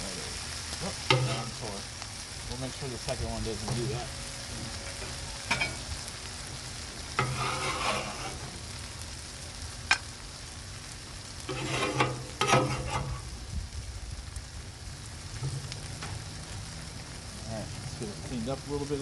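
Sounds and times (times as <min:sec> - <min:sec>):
meat sizzling on a griddle: 0:00.0 - 0:19.0
metal spatula scraping steel: 0:01.1 - 0:01.6, 0:07.2 - 0:08.6, 0:11.5 - 0:13.2.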